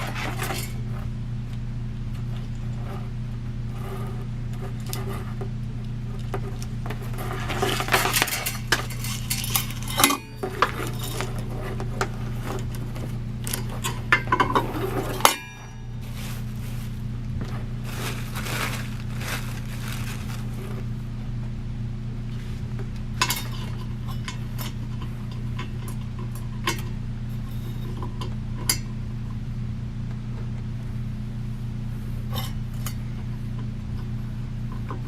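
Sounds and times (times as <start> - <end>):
low hum: 0.0 - 35.0
metal parts clinking and rattling: 7.6 - 11.5.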